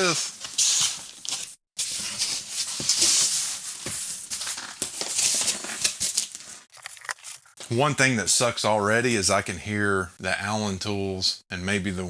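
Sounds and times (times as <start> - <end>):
cardboard packing rustling: 0.0 - 6.7.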